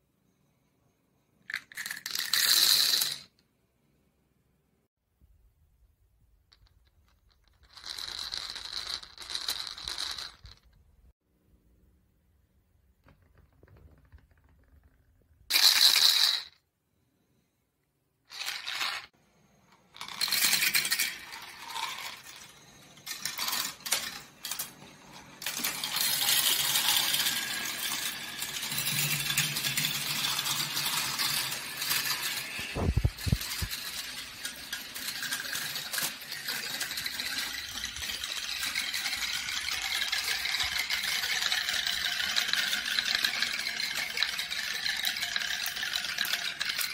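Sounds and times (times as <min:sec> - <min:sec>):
balls clattering down marble run: 0:20.0 - 0:46.9.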